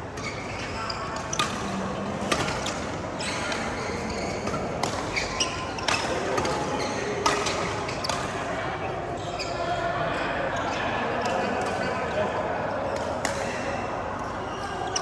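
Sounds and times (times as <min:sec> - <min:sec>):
shoe squeaks on court floor: 0:00.2 - 0:08.3, 0:09.2 - 0:09.8
racket hitting shuttlecock: 0:01.2 - 0:08.4, 0:13.0 - 0:13.6.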